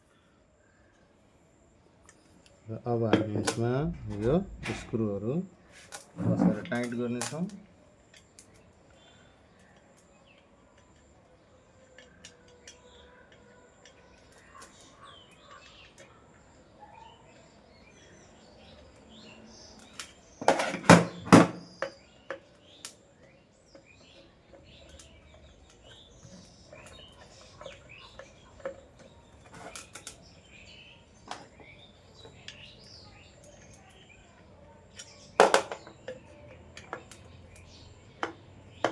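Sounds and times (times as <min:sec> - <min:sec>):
birds chirping: 0:02.2 - 0:07.6, 0:11.5 - 0:20.7, 0:21.6 - 0:38.9
clicks and taps of metal parts: 0:34.9 - 0:38.9.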